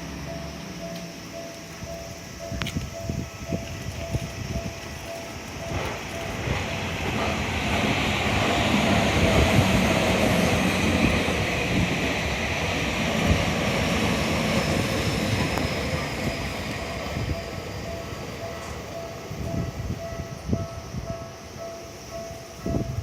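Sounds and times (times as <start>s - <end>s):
level crossing alarm bell: 0.0s - 6.6s, 14.2s - 23.0s
train wheels rumbling on rails: 0.0s - 23.0s.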